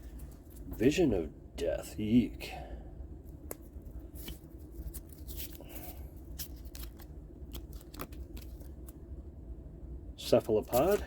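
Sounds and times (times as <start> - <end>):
plastic cards clicking and rustling: 3.4 - 9.0, 10.4 - 11.0.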